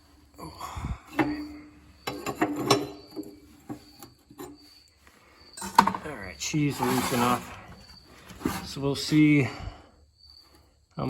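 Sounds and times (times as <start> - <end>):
metal scraping: 1.2 - 9.6.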